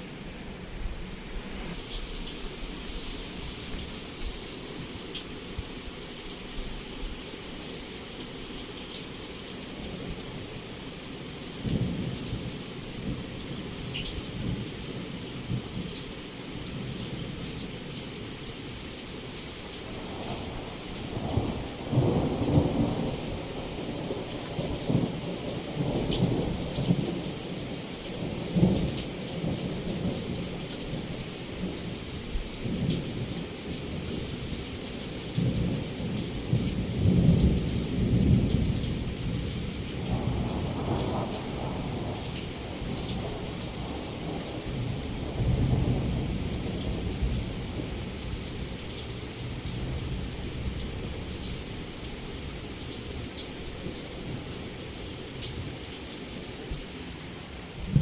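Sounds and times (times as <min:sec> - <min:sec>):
heavy rain against a window: 0:00.0 - 0:58.0
low rolling thunder: 0:20.1 - 0:27.6, 0:35.4 - 0:49.0, 0:57.8 - 0:58.0.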